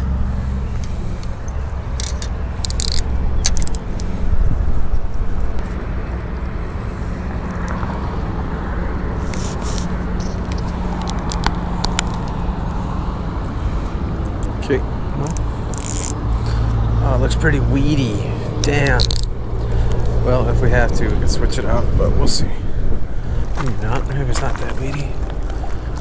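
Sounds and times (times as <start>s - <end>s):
low rumble of road vehicles: 0.0s - 26.0s
sharp clicks and scrapes: 0.7s - 5.8s, 9.2s - 12.8s, 15.2s - 16.7s, 18.6s - 20.2s.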